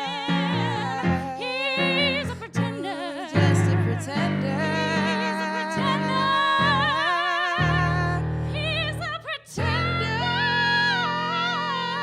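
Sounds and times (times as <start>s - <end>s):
person singing with vibrato: 0.0s - 12.0s.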